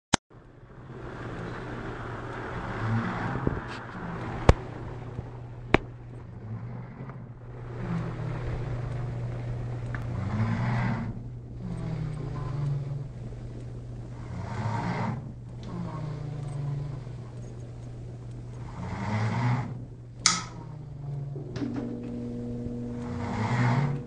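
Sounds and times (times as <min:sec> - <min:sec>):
steady low hum: 0:00.4 - 0:24.0
sharp click: 0:20.2 - 0:20.6
person snoring: 0:20.6 - 0:24.0.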